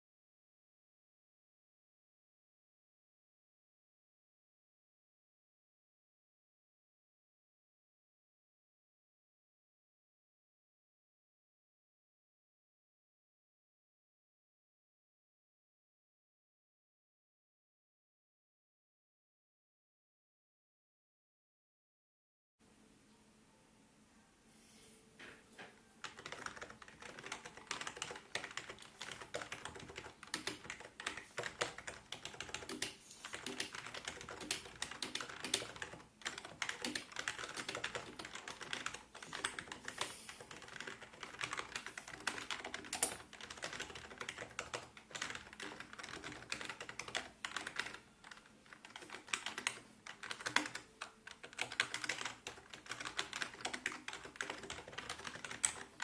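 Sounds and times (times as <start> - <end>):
computer keyboard typing: 26.0 - 56.0.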